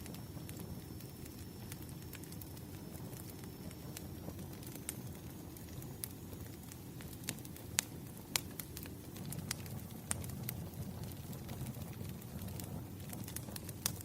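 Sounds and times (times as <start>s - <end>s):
logs crackling and popping: 0.0s - 14.0s
low rumble of flames: 0.0s - 14.0s.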